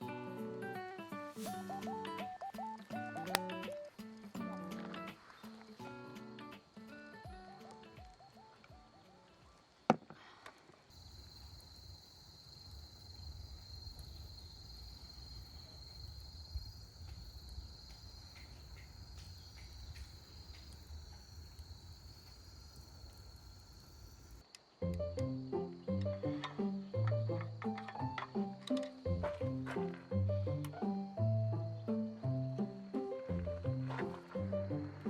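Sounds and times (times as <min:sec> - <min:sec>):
insects chirring: 0:00.2 - 0:09.8, 0:10.9 - 0:35.0
faint clicks: 0:17.0 - 0:23.2.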